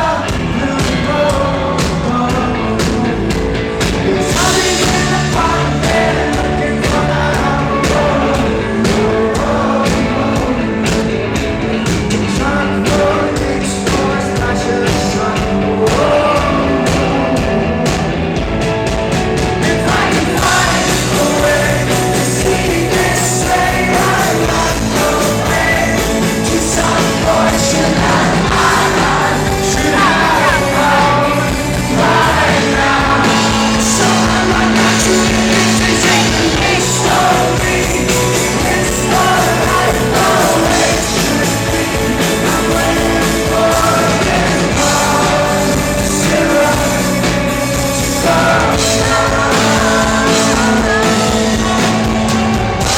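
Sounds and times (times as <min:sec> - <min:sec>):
lead vocal singing: 0:00.0 - 0:52.9
rock band playing: 0:00.0 - 0:52.9.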